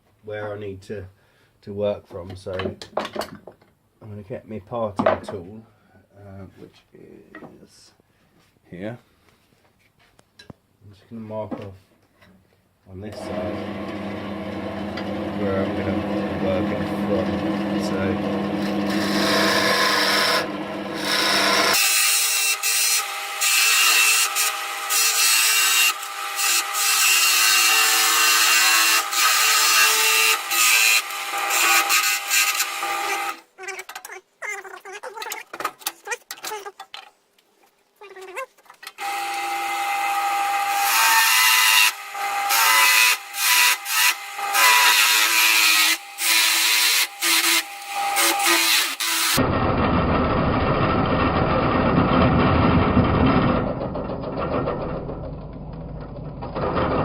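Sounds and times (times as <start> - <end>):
wood lathe humming: 13.2 - 21.9, 39.0 - 49.4
tool scraping spinning wood: 13.3 - 21.8.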